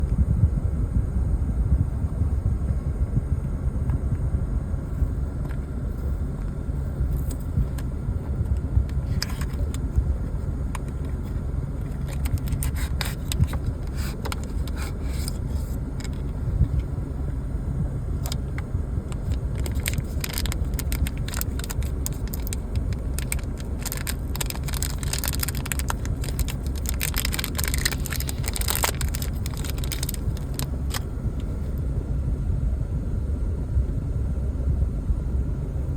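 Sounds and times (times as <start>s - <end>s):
low rumble: 0.0s - 35.9s
packaging being handled: 9.0s - 16.4s, 18.2s - 31.7s.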